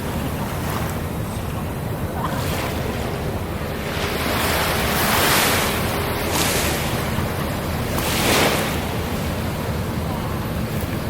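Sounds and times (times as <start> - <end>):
sea waves washing ashore: 0.0 - 11.0.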